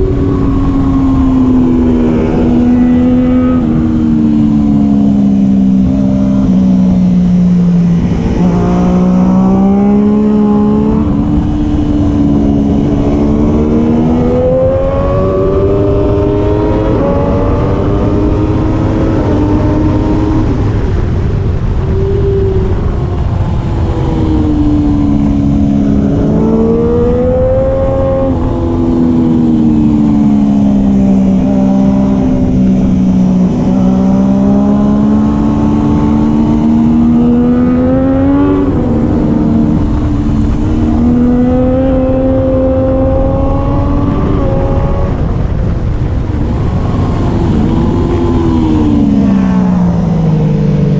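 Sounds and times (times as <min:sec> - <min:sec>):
motorcycle engine shifting gears: 0:00.0 - 0:50.9.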